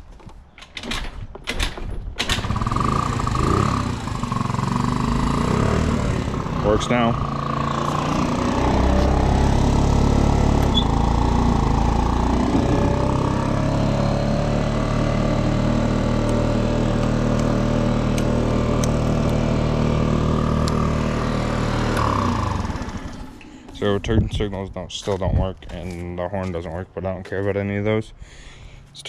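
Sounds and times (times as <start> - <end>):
scooter engine idling: 2.4 - 24.0.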